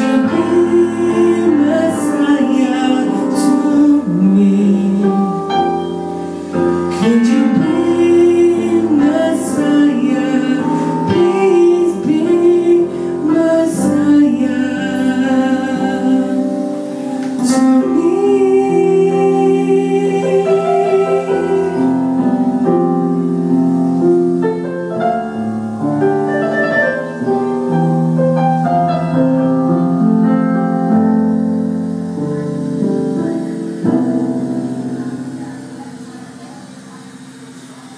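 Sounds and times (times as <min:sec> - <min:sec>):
person singing worship song: 0:00.0 - 0:24.0
piano accompaniment: 0:00.0 - 0:37.9.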